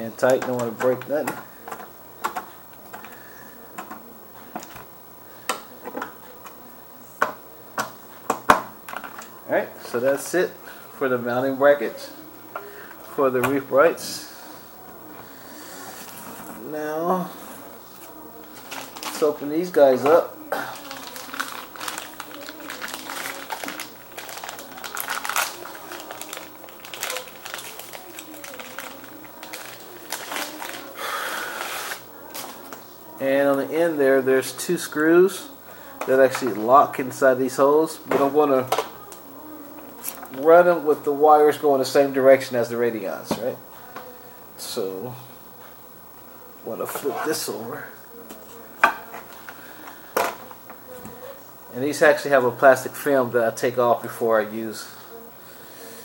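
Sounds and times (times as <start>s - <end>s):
packaging rustling and crinkling: 17.6s - 32.8s.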